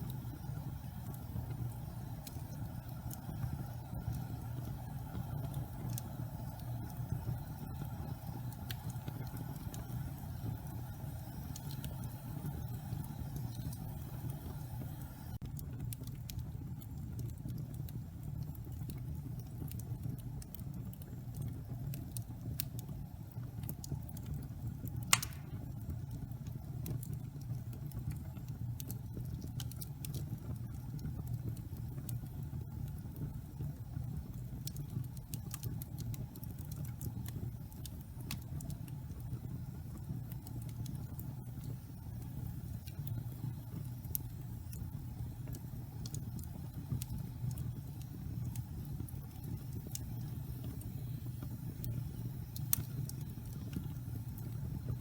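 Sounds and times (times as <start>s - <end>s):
wood fire crackling: 0.0s - 55.0s
loud pop from fire: 25.1s - 25.7s.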